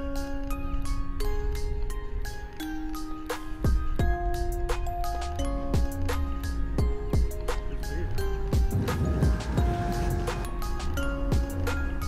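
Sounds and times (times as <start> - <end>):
held synth notes: 0.0 - 12.0
deep kick drum thumps: 8.6 - 10.5.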